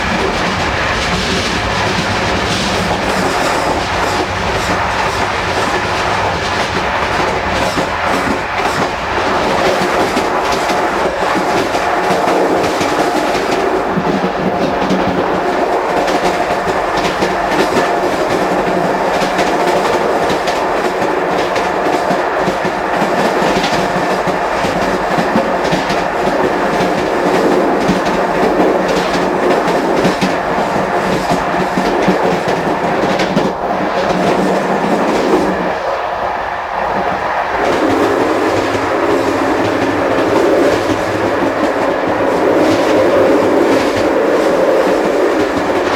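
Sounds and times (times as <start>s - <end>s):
train wheels rumbling on track: 0.0s - 45.9s.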